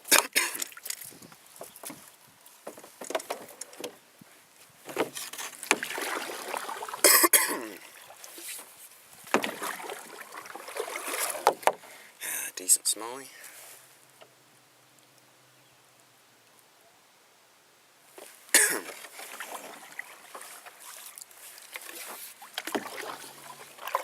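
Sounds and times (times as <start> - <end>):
water splashing against boat: 4.8 - 12.1, 18.2 - 24.0.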